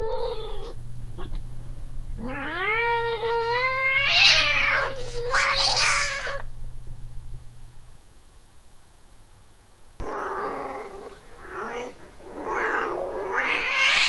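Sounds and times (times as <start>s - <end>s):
cat hissing: 2.2s - 6.4s, 10.0s - 14.0s
cat yowling: 2.2s - 6.4s, 11.4s - 14.0s.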